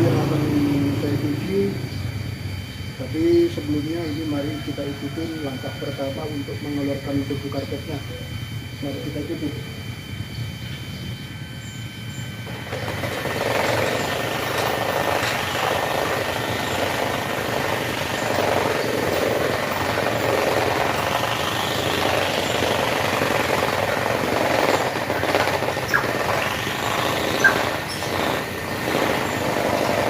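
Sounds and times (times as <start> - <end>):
carpet cleaning machine running: 12.4 - 30.0.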